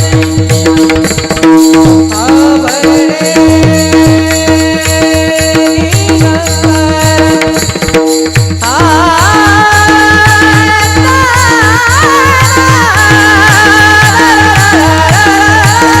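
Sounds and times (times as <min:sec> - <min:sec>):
steady drum beat: 0:00.0 - 0:16.0
man singing long wavering notes: 0:08.6 - 0:16.0.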